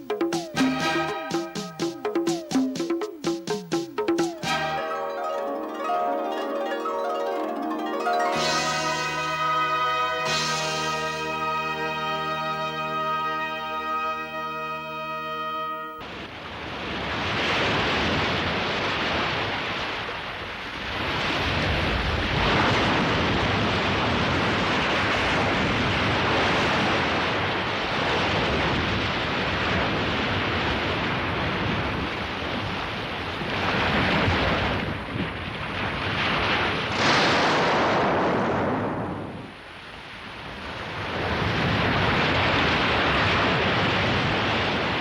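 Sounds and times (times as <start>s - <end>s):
sea waves crashing: 0.0s - 14.3s, 35.8s - 45.0s.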